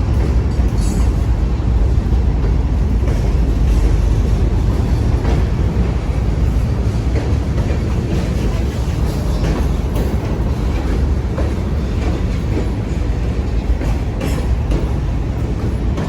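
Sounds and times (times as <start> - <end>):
freight train rumbling: 0.0 - 16.0.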